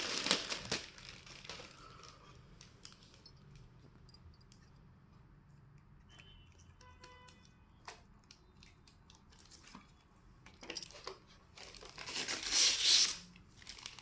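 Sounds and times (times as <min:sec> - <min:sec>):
packaging crinkling: 0:00.0 - 0:03.3, 0:11.5 - 0:14.0.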